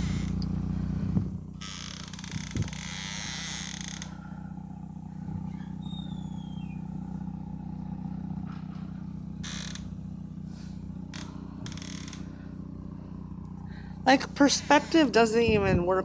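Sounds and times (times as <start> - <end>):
low mechanical hum: 0.0 - 16.0
short falling whistle: 5.8 - 6.8.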